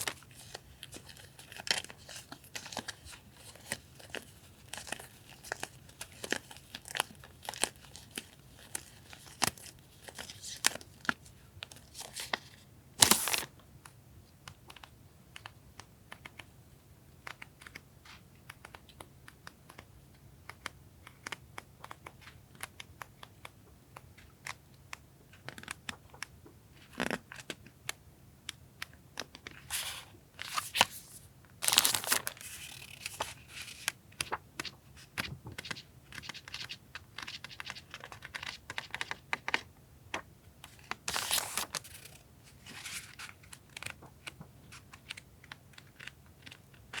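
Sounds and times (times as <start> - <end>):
paper crinkling and rustling: 0.0 - 13.5, 29.4 - 47.0.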